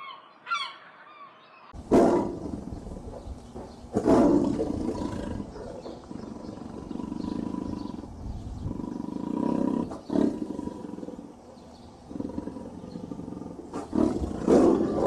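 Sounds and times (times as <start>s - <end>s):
big cat roaring: 1.8s - 3.1s, 3.9s - 11.4s, 12.0s - 15.0s.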